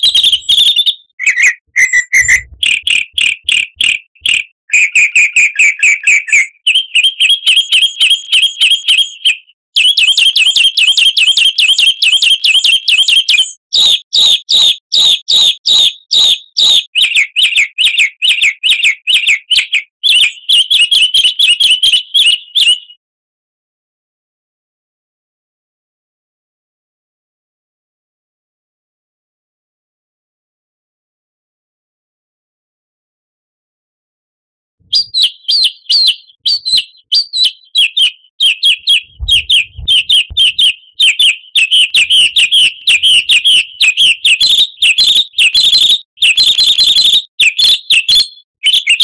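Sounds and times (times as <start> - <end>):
songbird chirping and trilling: 0.0 - 23.0, 34.9 - 49.0.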